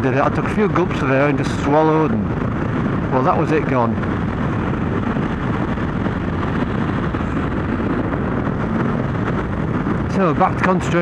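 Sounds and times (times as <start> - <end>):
motorcycle engine running: 0.0 - 11.0
wind rush on microphone: 0.0 - 11.0.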